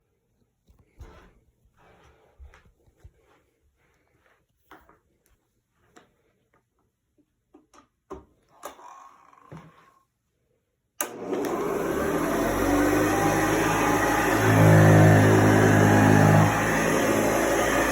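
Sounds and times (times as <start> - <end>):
upright vacuum cleaner running: 11.0 - 17.9.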